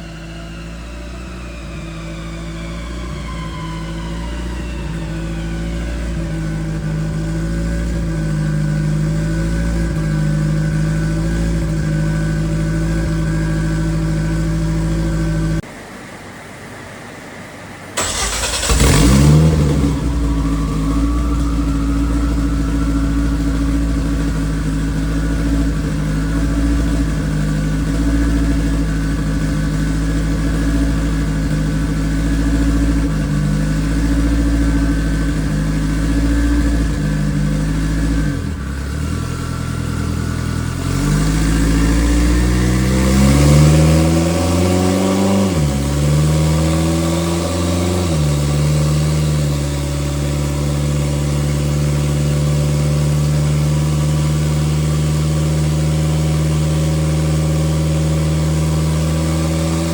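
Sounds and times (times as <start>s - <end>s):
race car engine revving: 18.0s - 59.9s.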